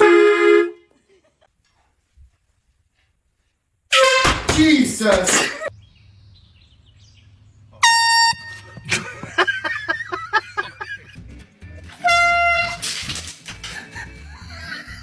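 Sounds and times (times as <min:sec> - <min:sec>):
air horn blasts: 0:00.0 - 0:00.9, 0:03.9 - 0:04.5, 0:07.8 - 0:09.0, 0:12.0 - 0:12.8.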